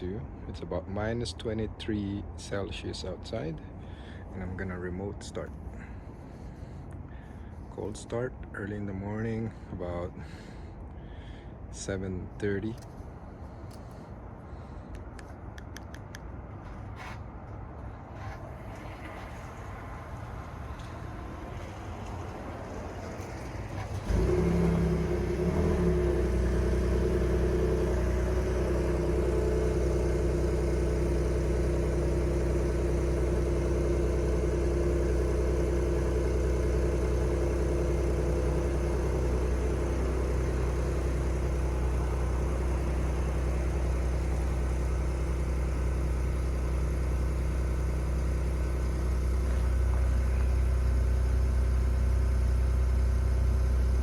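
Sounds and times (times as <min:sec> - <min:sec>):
truck engine starting and idling: 0:00.0 - 0:54.0
grinding humming drone: 0:17.8 - 0:54.0.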